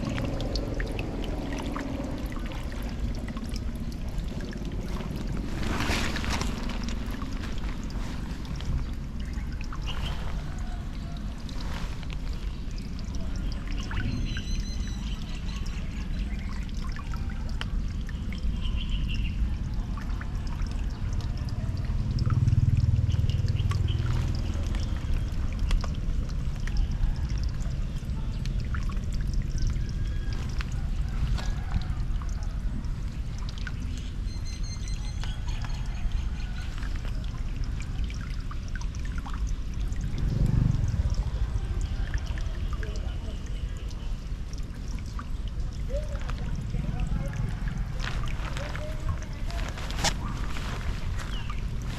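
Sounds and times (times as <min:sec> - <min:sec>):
floodwater rushing into a drain: 0:00.0 - 0:51.9.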